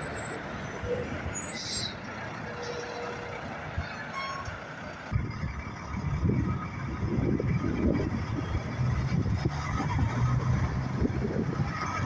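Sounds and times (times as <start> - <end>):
passing trucks: 0.0 - 12.0
low gusty rumble: 5.0 - 12.0.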